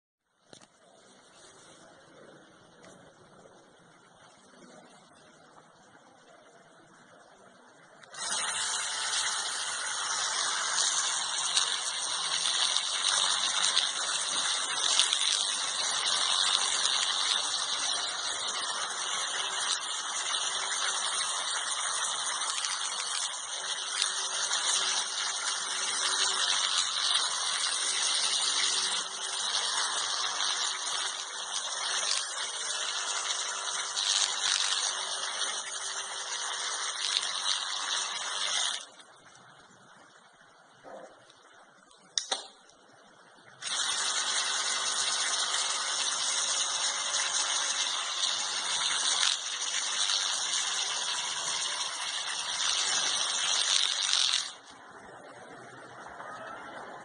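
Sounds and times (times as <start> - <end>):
electric toothbrush buzzing: 8.0 - 39.1, 43.6 - 56.6.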